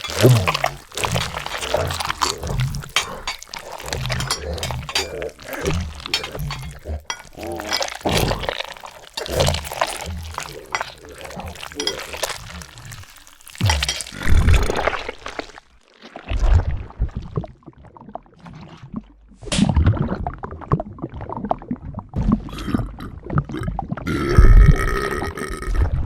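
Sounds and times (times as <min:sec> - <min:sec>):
wet gulping and slurping: 0:00.0 - 0:26.0
long deep belch: 0:22.4 - 0:26.0.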